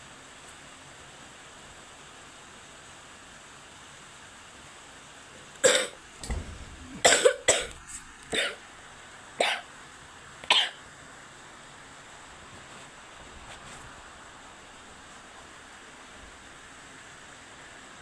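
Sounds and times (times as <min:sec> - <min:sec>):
steady low hiss: 0:00.0 - 0:18.0
person coughing: 0:05.6 - 0:07.8, 0:09.4 - 0:09.6, 0:10.5 - 0:10.8.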